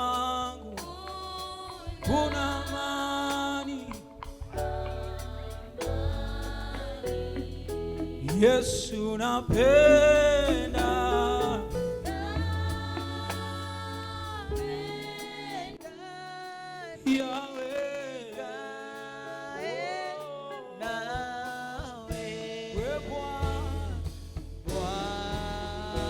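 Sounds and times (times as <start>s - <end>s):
bass: 0.0s - 15.9s, 21.1s - 26.0s
congregation singing worship song: 0.0s - 26.0s
instrumental accompaniment: 0.0s - 26.0s.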